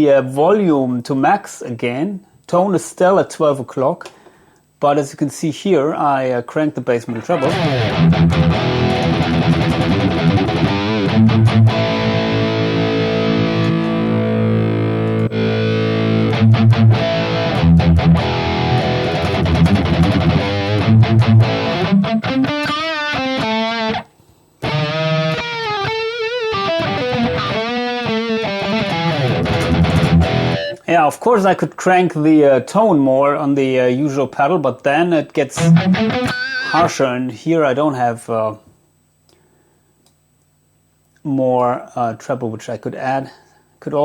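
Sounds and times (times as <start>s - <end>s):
distorted electric guitar: 7.1s - 30.8s, 35.6s - 37.0s.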